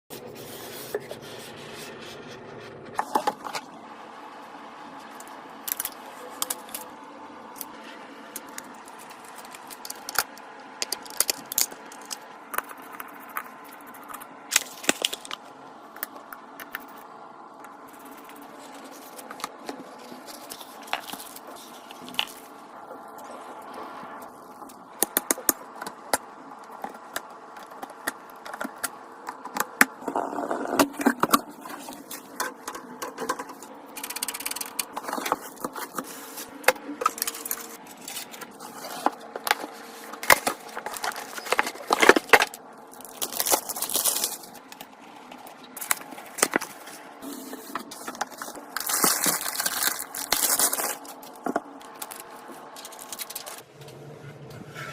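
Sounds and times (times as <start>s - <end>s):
clicks and knocks of plastic and metal parts: 30.8s - 46.9s.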